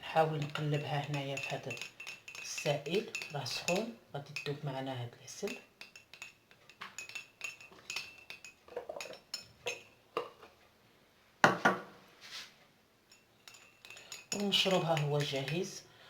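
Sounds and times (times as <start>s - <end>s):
spoon clinking against cup: 0.2s - 10.3s, 13.1s - 15.8s.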